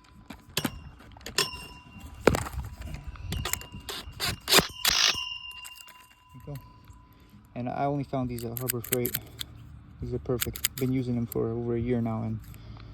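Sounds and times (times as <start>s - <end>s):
metal clinks and scrapes: 0.0s - 7.4s, 8.2s - 9.7s, 10.4s - 11.4s.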